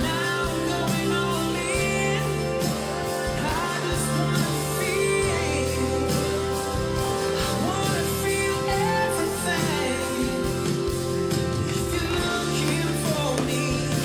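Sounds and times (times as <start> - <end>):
guitar accompaniment: 0.0 - 14.0
person singing gospel song: 7.4 - 14.0.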